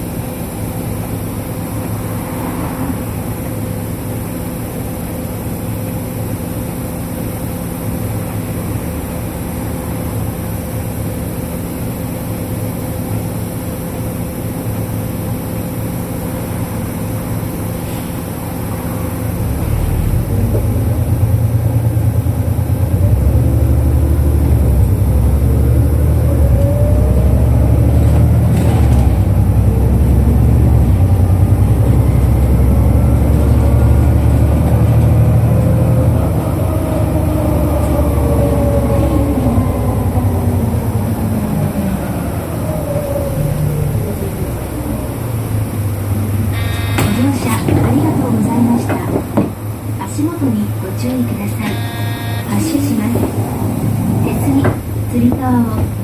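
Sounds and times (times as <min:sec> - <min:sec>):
bus engine: 0:00.0 - 0:56.0
whining tones climbing in pitch: 0:25.3 - 0:34.0, 0:35.1 - 0:45.6.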